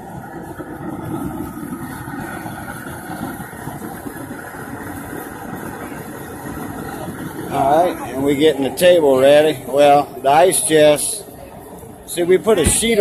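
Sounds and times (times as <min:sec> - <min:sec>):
gas burner roaring: 0:00.0 - 0:13.0.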